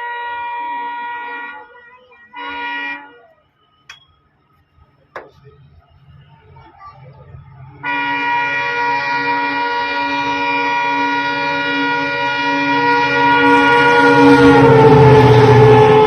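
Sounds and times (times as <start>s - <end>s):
locomotive horn blasts: 0.0s - 3.3s, 7.8s - 16.0s
low train rumble: 0.0s - 16.0s.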